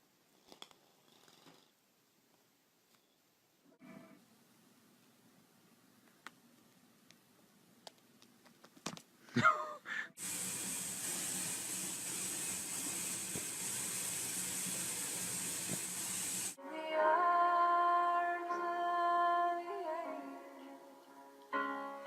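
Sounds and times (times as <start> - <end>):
steady hiss: 10.0 - 16.6
music: 16.6 - 22.0.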